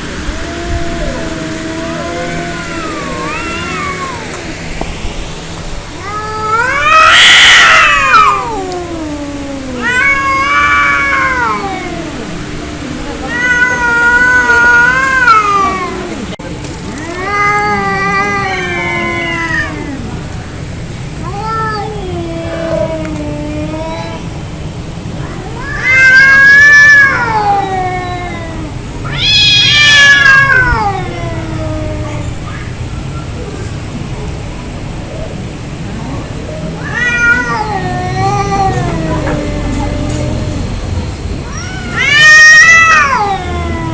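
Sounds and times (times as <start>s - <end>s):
cats caterwauling in a fight: 0.0s - 4.9s, 5.7s - 43.9s.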